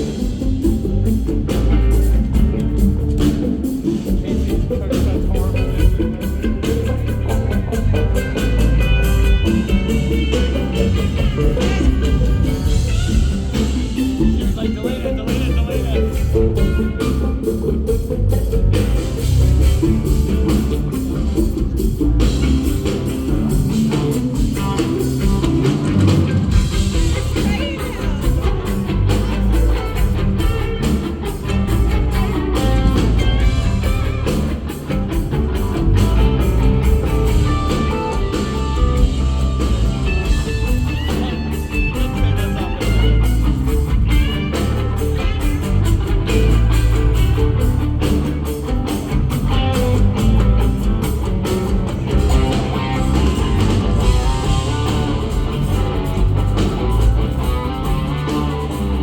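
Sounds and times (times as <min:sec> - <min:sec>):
bass guitar: 0:00.0 - 0:59.0
drum kit beat: 0:00.0 - 0:59.0
electric guitar melody: 0:00.0 - 0:59.0.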